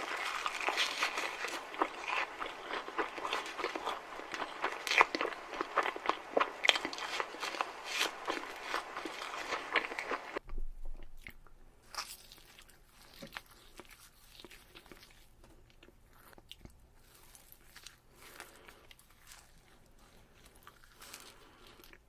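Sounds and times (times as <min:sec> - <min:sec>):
person chewing bread: 0:00.0 - 0:22.0.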